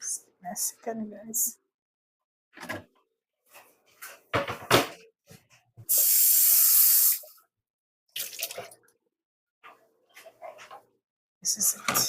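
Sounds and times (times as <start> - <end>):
kitchen things knocking: 4.3 - 5.0
water from kitchen tap hissing: 5.9 - 7.4.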